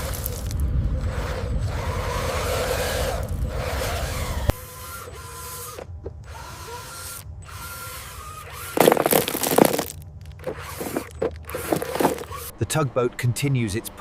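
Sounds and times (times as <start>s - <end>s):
small electric motors whining: 0.0s - 12.6s
rattling grinding burst: 7.8s - 12.5s.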